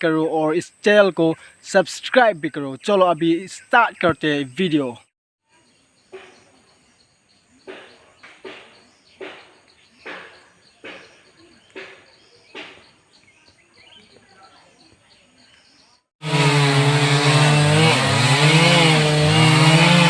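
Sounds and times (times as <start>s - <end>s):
sharp knocks: 7.7s - 12.8s.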